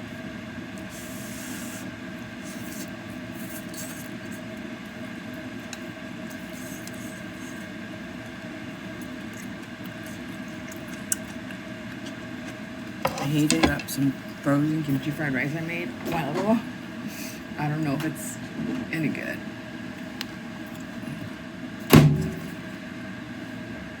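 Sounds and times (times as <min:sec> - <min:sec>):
steady mechanical hum: 0:00.0 - 0:24.0.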